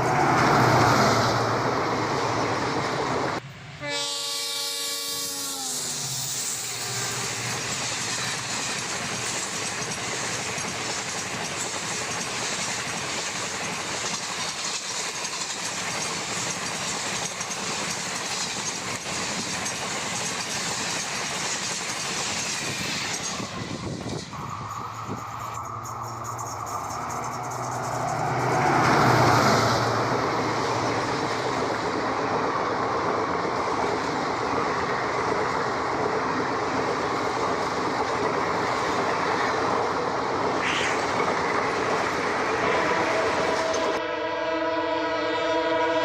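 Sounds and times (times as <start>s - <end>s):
train rushing past on rails: 0.0s - 46.0s
locomotive horn: 3.8s - 6.1s, 42.7s - 46.0s.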